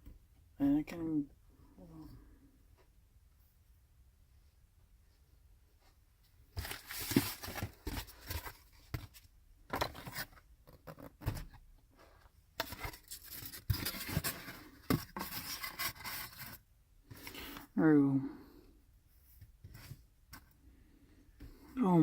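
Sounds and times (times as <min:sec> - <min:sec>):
packaging rustling and tearing: 0:06.6 - 0:08.7.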